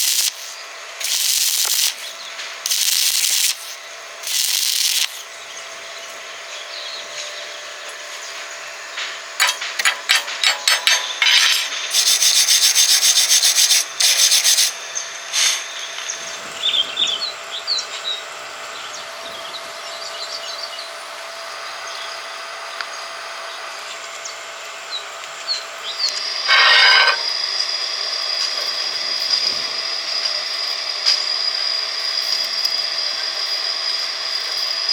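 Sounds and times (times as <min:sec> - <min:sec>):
steady background hum: 0:00.1 - 0:29.8
hand rasping on metal: 0:26.5 - 0:27.3.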